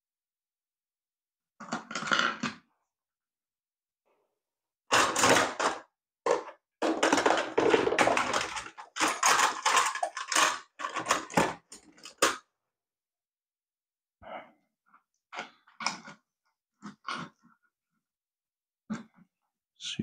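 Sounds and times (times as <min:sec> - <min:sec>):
plastic parts and tools clattering: 0:01.6 - 0:02.6, 0:04.9 - 0:12.5.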